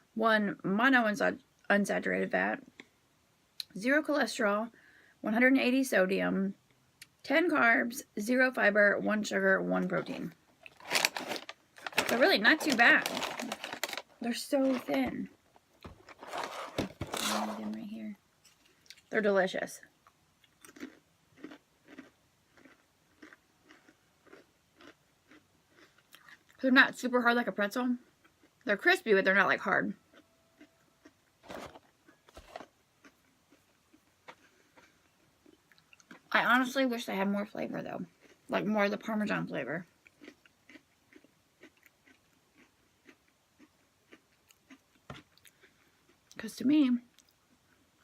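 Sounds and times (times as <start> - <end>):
person chewing crispy crackers: 10.6 - 15.0, 15.8 - 17.8, 20.0 - 26.6, 28.1 - 28.6, 30.1 - 36.3, 38.0 - 38.5, 40.0 - 46.4.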